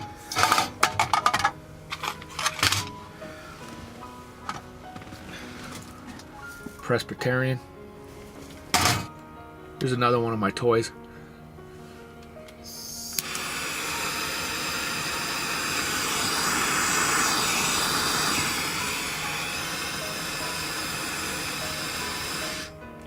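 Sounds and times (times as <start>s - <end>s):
torch flame hissing: 12.7s - 22.8s
torch igniter click: 13.0s - 22.7s.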